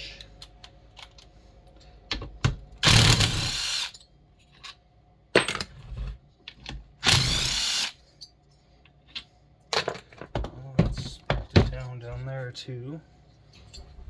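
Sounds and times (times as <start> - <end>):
power drill: 2.8 - 3.9, 7.0 - 8.0.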